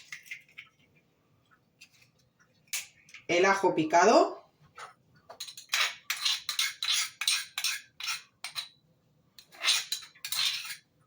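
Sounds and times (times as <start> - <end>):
spoon scraping a dish: 5.3 - 8.8, 9.4 - 10.9.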